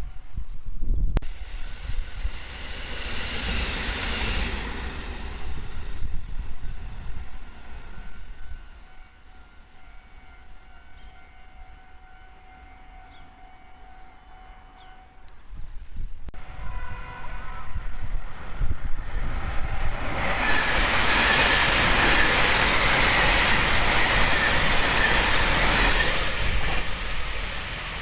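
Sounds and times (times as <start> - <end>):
train passing rumble: 1.2 - 28.0.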